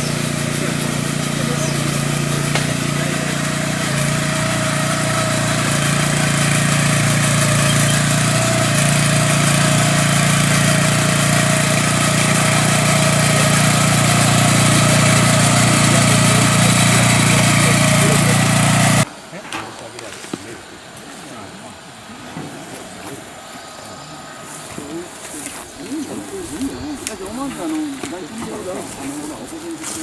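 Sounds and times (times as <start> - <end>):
small engine running: 0.0 - 19.1.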